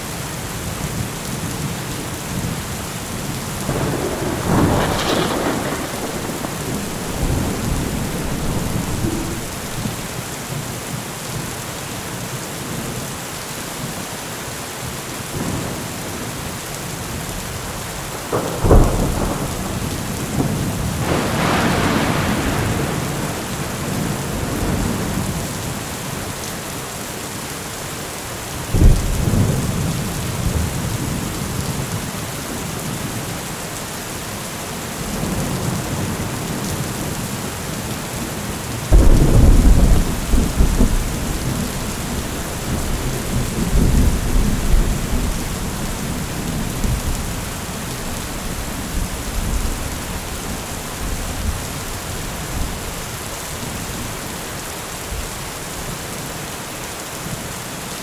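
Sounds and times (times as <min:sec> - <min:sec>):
heavy rain pouring: 0:00.0 - 0:58.0
thunder rumbling: 0:03.4 - 0:10.7, 0:18.0 - 0:25.7, 0:35.1 - 0:54.2
sharp thunder cracks: 0:03.7 - 0:10.2, 0:18.1 - 0:25.3, 0:38.9 - 0:52.8.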